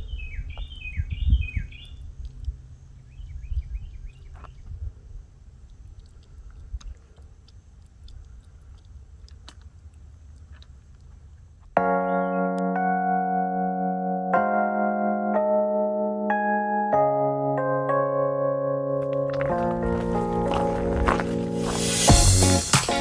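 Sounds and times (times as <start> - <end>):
bird chirping: 0.0 - 4.8, 11.8 - 12.7.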